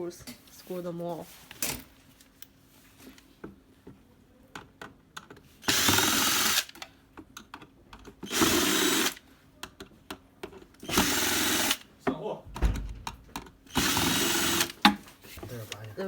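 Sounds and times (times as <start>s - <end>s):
electric screwdriver running: 5.6s - 6.8s, 8.2s - 9.2s, 10.8s - 11.8s, 13.7s - 14.8s.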